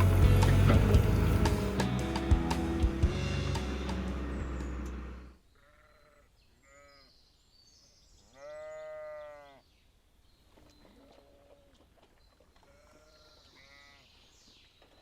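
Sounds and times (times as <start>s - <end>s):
sheep bleating: 5.6s - 7.0s, 8.4s - 9.6s, 12.7s - 14.0s.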